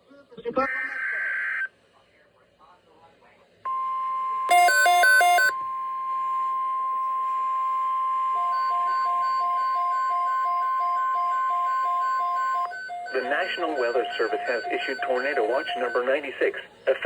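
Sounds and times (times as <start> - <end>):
repeating beep: 3.7 - 16.2
steady warning alarm tone: 3.7 - 16.6.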